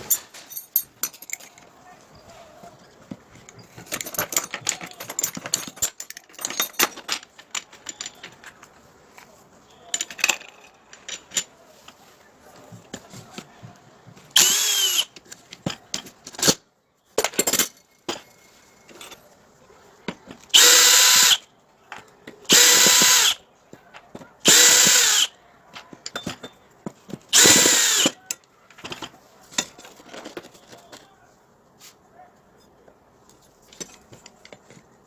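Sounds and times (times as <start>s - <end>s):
handling clicks and knocks: 0.0s - 14.4s, 15.0s - 20.6s, 21.6s - 31.2s, 32.4s - 35.0s
electric drill bursts: 14.4s - 15.1s, 20.6s - 21.4s, 22.5s - 23.4s, 24.4s - 25.3s, 27.3s - 28.2s.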